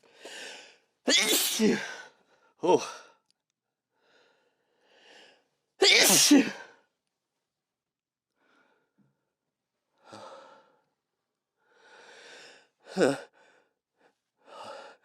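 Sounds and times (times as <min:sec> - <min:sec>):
person breathing heavily: 0:00.0 - 0:00.9, 0:10.0 - 0:10.9, 0:11.6 - 0:13.8, 0:14.4 - 0:15.0.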